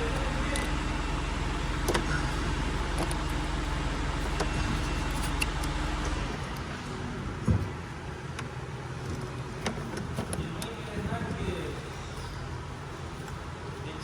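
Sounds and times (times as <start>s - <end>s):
vehicle engine running: 0.0s - 11.0s.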